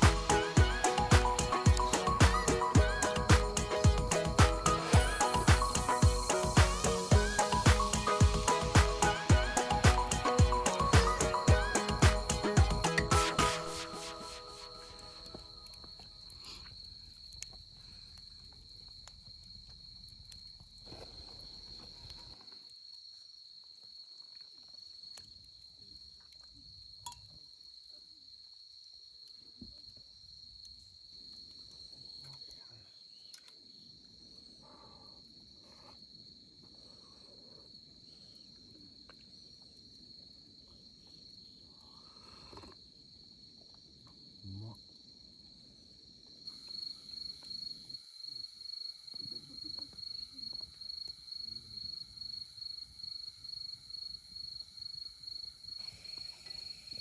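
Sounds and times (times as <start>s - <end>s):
crickets trilling: 14.0s - 28.4s, 29.1s - 57.0s.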